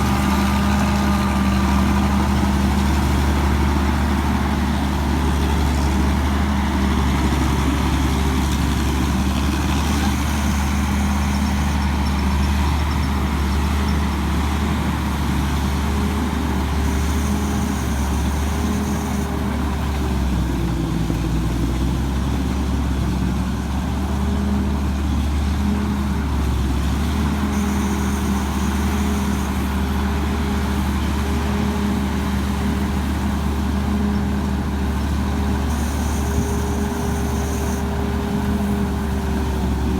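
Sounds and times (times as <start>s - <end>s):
diesel engine humming: 0.0s - 39.9s.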